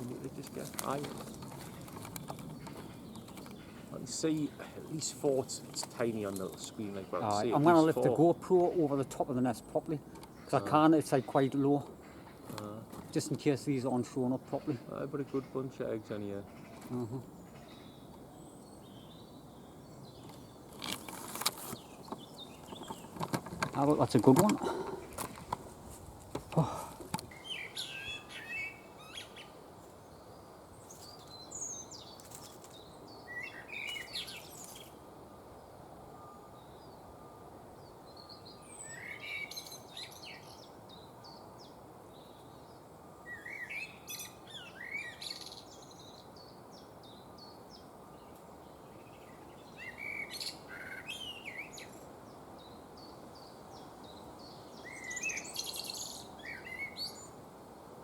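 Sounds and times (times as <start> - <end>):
low background hiss: 0.0 - 58.0
songbird chirping: 0.0 - 58.0.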